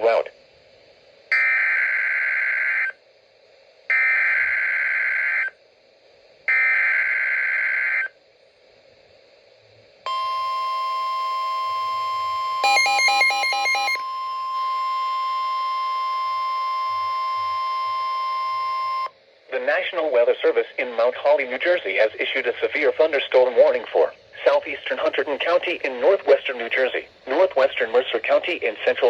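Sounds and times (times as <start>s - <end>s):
steady warning alarm tone: 6.5s - 8.1s, 10.1s - 19.1s
alternating beeps: 10.1s - 19.1s
buzzing data tone bursts: 10.1s - 19.1s.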